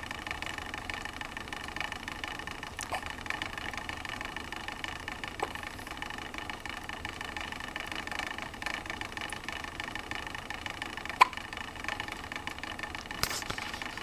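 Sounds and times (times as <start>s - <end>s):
steady mechanical hum: 0.0s - 14.0s
baby hiccuping: 2.8s - 3.1s.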